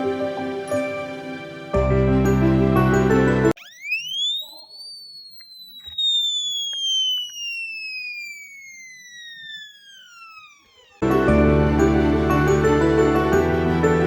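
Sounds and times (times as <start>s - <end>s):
electronic siren wail: 3.5s - 11.0s.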